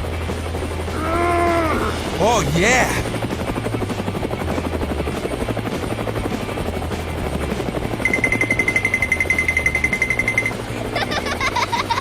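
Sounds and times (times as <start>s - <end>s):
fast-pulsing high beep: 8.0s - 10.6s.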